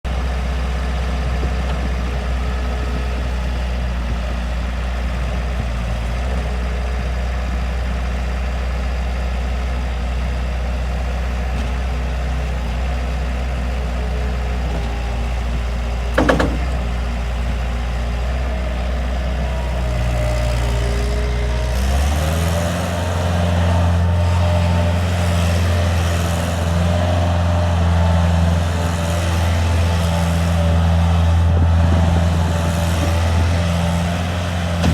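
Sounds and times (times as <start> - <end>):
diesel engine idling: 0.1 - 34.9
sharp knock: 16.2 - 16.8.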